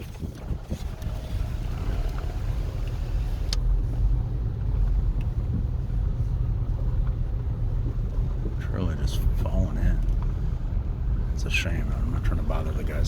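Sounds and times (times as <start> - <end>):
car engine rumble: 0.0 - 13.0
road noise: 0.0 - 13.0.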